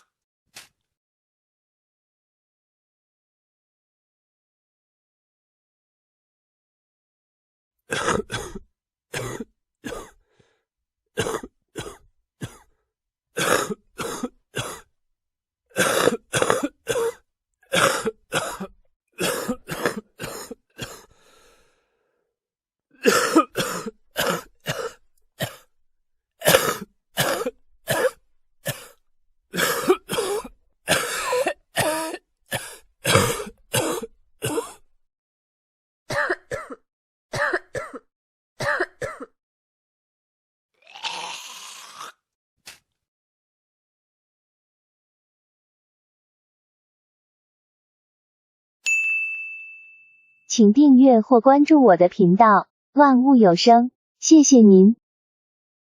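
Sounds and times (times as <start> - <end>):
person coughing: 7.9 - 10.2, 11.2 - 12.7, 13.4 - 14.9, 15.8 - 21.1, 23.0 - 25.7, 26.4 - 34.8, 37.4 - 39.4.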